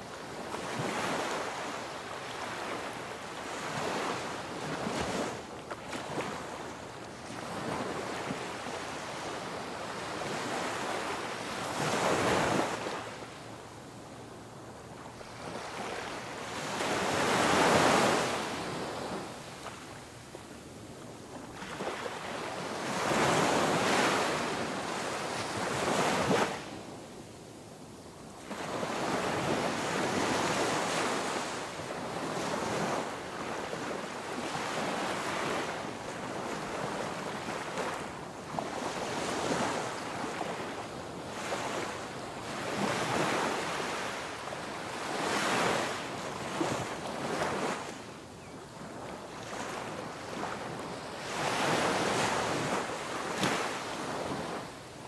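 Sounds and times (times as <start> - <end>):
ocean waves breaking on shore: 0.0 - 13.6, 15.0 - 20.1, 21.4 - 26.9, 28.4 - 55.0.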